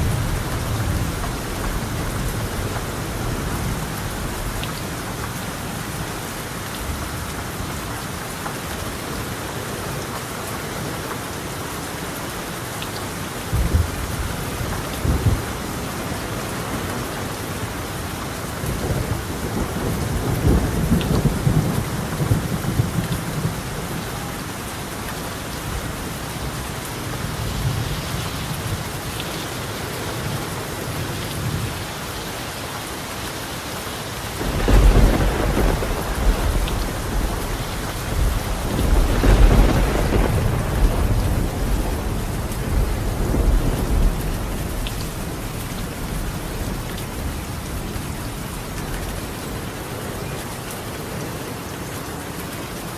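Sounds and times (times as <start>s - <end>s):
heavy rain on a tiled roof: 0.0s - 52.9s
thunder rolling: 34.4s - 47.3s.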